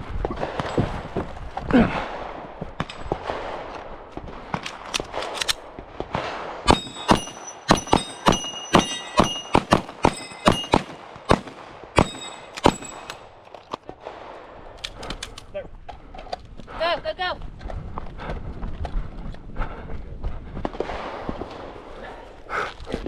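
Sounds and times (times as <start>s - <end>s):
rapid gunfire: 6.3s - 13.0s
steel targets ringing: 6.7s - 11.4s, 12.0s - 13.4s.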